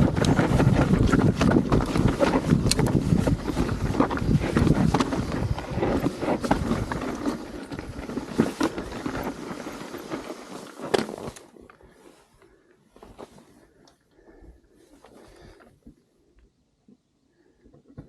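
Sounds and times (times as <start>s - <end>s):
wind on microphone: 0.0s - 8.2s
bike rattling over rock: 0.0s - 11.7s.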